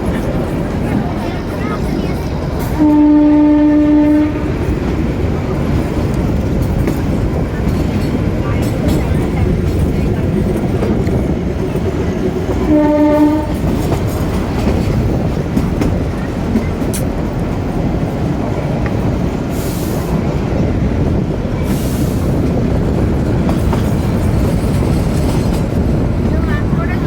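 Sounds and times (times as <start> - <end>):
toy train horn blast: 2.8 - 4.5, 12.7 - 13.6.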